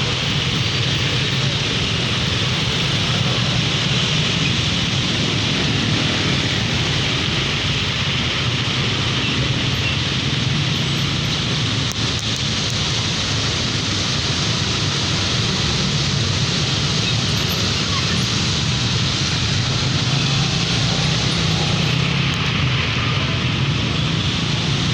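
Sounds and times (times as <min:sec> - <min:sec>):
rain hissing on wet road: 0:00.0 - 0:24.9.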